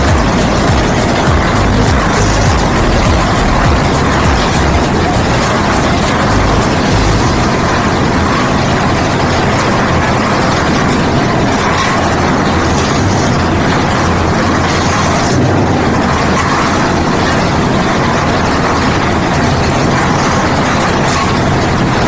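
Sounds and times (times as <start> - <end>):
concrete mixer running: 0.0 - 22.0.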